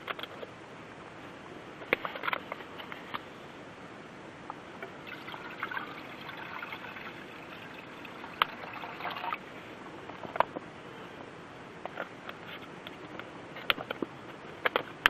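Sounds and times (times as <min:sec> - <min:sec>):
water pouring into metal pot: 0:05.0 - 0:09.5.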